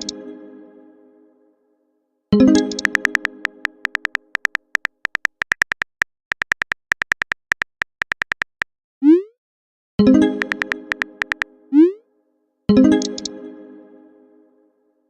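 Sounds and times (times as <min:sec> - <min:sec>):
phone keyboard typing clicks: 0:02.6 - 0:08.7, 0:10.4 - 0:11.5.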